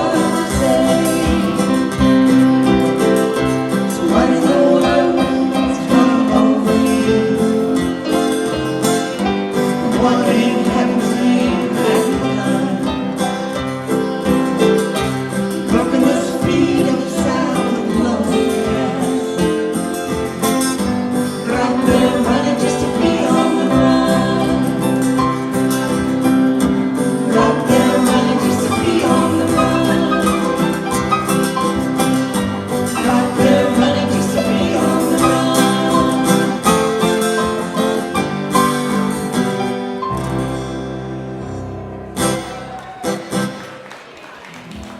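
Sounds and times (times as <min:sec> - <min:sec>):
acoustic folk band playing: 0:00.0 - 0:44.9
guitar: 0:00.0 - 0:44.9.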